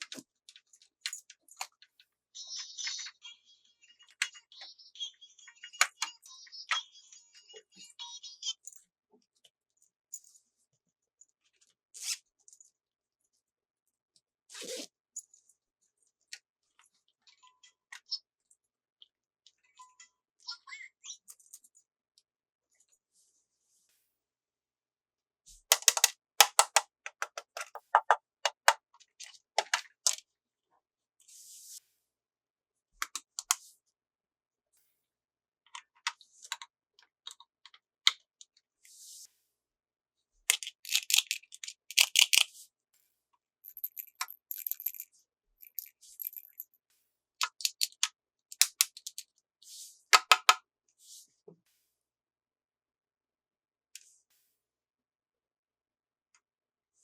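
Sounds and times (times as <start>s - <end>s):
plastic toy pieces clicking: 25.7s - 28.8s, 40.5s - 42.5s, 43.6s - 46.8s, 47.4s - 49.3s, 50.2s - 50.6s.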